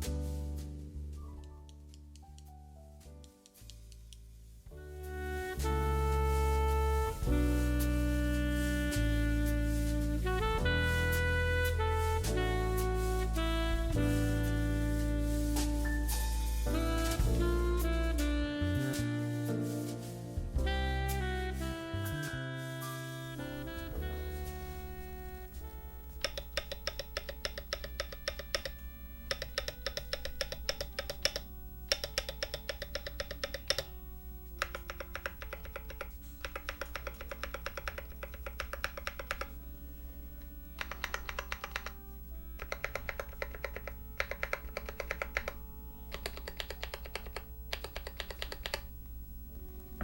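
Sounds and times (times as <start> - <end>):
background music: 0.0 - 50.0
fast typing on mechanical keyboard: 26.2 - 33.9, 34.6 - 39.6, 40.8 - 42.0, 42.6 - 48.9.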